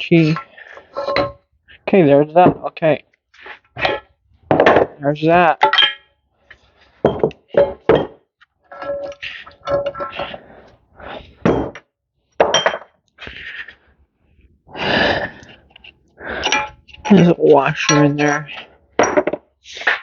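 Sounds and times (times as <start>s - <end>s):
metal parts knocking and clinking: 0.4s - 1.4s, 5.6s - 6.1s, 7.0s - 10.3s, 15.7s - 19.4s.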